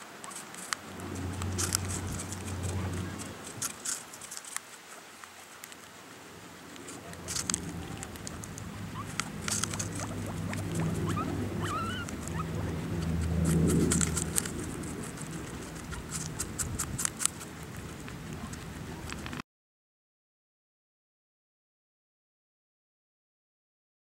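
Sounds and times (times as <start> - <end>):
guinea pigs chewing crunchily: 0.0 - 19.4
low steady drone: 0.7 - 3.8, 6.2 - 16.6
faint squeaks: 6.6 - 16.8.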